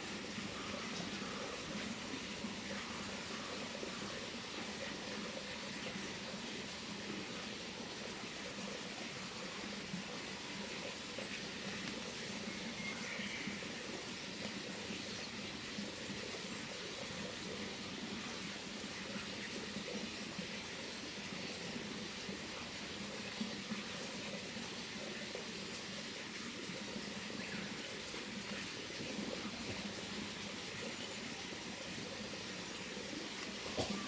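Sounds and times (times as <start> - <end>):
faint high chirp: 0.0 - 1.6, 12.4 - 13.7
steady background hiss: 0.0 - 34.0.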